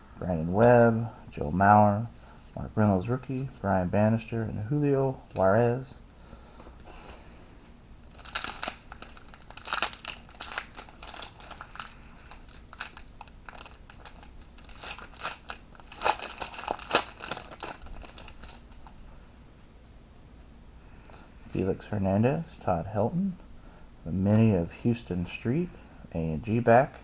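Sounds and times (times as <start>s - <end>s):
card pack wrapper crinkling: 8.1s - 19.0s.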